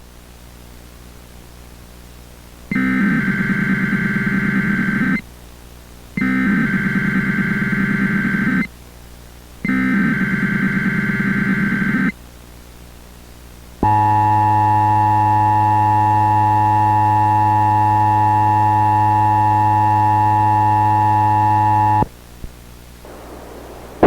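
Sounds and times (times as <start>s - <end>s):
two-tone electronic alarm tone: 2.7s - 5.2s, 6.2s - 8.7s, 9.7s - 12.1s, 13.8s - 22.0s
faint hiss: 22.3s - 24.0s.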